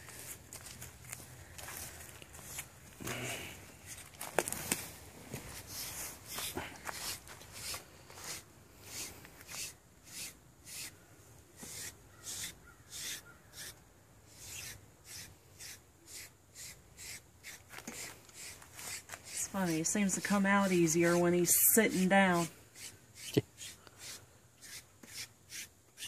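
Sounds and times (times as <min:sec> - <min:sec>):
blade brushing dog's coat: 0:14.4 - 0:25.7.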